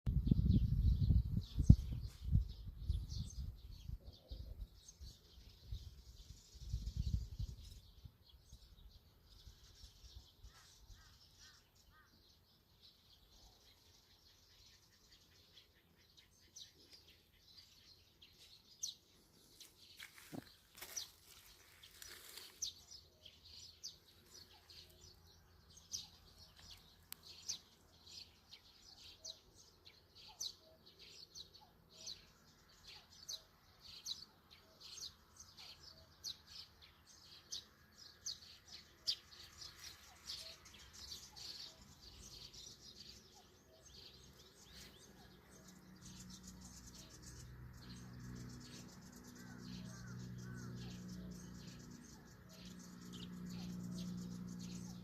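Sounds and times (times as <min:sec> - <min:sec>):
small birds chirping: 0:00.1 - 0:55.0.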